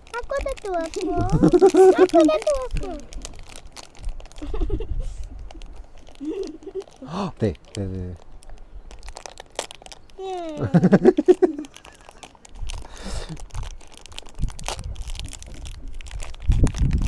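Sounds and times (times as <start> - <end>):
child's voice: 0.0 - 3.2, 10.2 - 10.9
packaging crinkling and tearing: 0.0 - 17.0.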